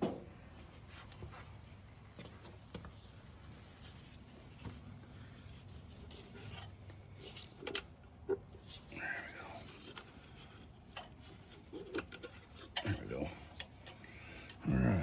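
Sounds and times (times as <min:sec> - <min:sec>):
metal tools clicking and scraping: 0:10.8 - 0:14.6.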